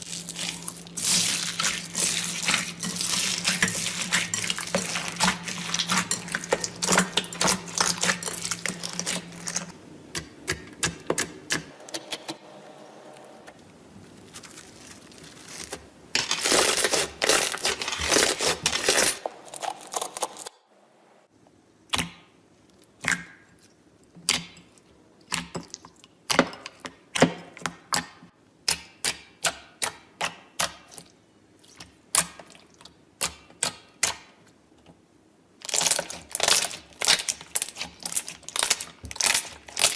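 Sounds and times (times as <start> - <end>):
slime crackling and popping: 0.0 - 9.7, 35.6 - 39.9.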